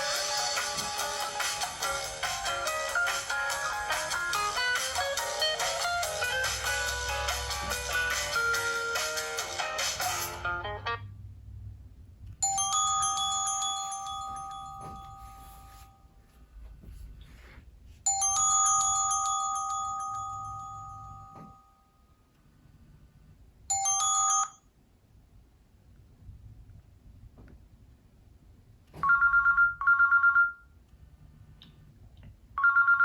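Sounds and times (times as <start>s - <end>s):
bell-like ringtone chime: 12.4s - 16.0s, 18.1s - 21.9s, 23.7s - 24.7s.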